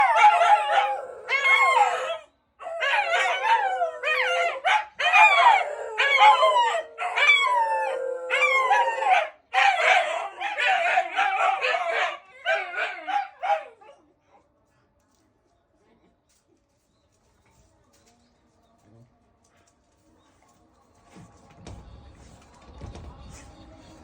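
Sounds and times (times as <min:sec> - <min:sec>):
dogs howling: 0:00.0 - 0:14.0.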